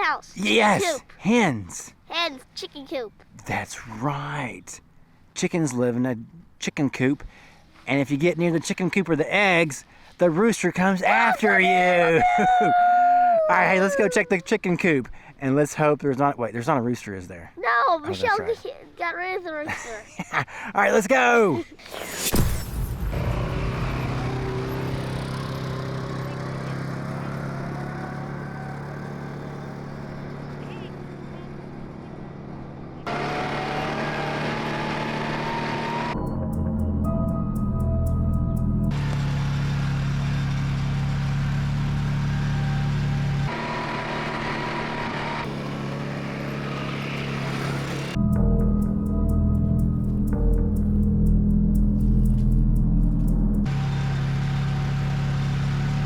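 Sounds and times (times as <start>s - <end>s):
engine running: 22.4s - 56.0s
road and wind noise: 22.4s - 56.0s.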